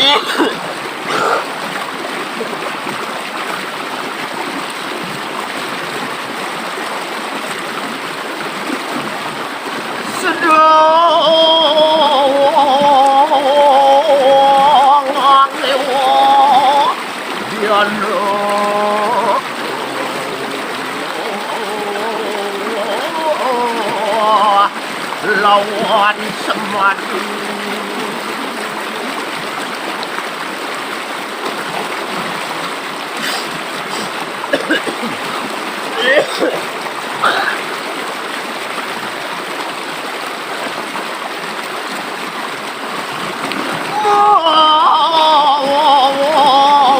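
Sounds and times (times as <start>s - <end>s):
river water flowing: 0.0s - 46.9s
person singing long held notes: 10.0s - 29.1s, 43.9s - 46.9s.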